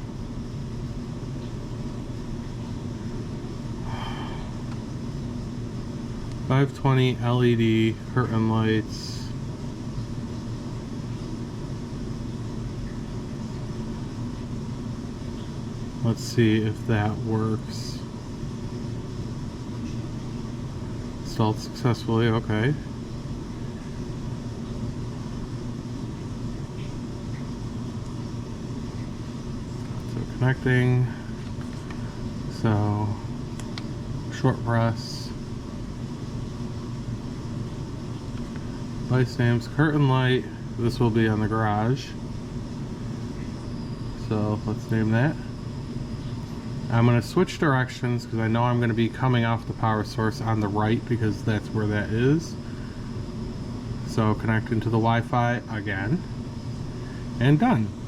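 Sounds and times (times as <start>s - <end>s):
low hum and rumble: 0.0s - 58.0s.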